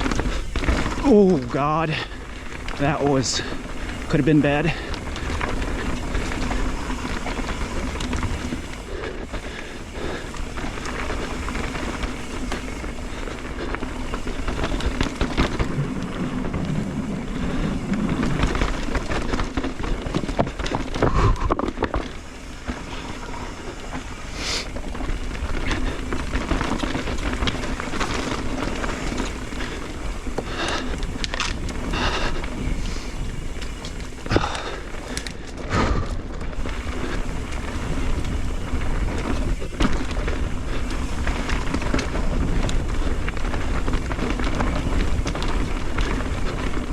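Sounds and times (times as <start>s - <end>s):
bike chain and frame rattling: 0.0s - 46.9s
bike tyres on dirt: 0.0s - 46.9s.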